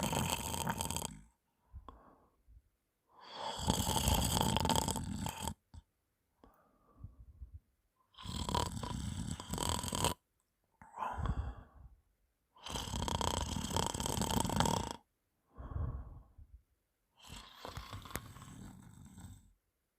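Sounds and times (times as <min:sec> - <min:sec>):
woman snoring wetly: 0:00.0 - 0:01.3, 0:03.2 - 0:05.6, 0:08.1 - 0:10.2, 0:12.6 - 0:15.1, 0:17.2 - 0:19.4
quiet breath: 0:00.0 - 0:05.5, 0:06.4 - 0:07.6, 0:10.8 - 0:12.1, 0:15.4 - 0:19.6.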